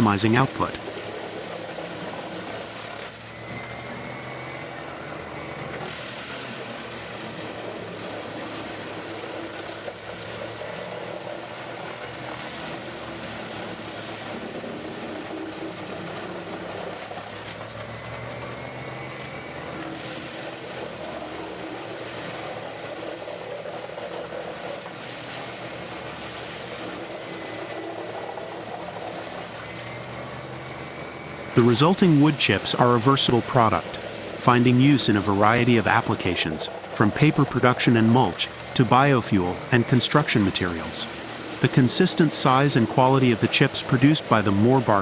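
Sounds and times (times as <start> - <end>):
wood chipper engine drone: 0.7 - 23.3, 24.9 - 32.8.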